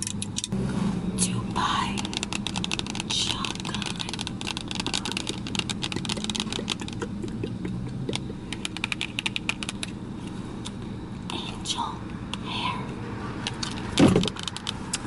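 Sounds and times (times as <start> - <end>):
steady low hum: 0.0 - 15.0
plastic bag clicking and crinkling: 2.0 - 7.0.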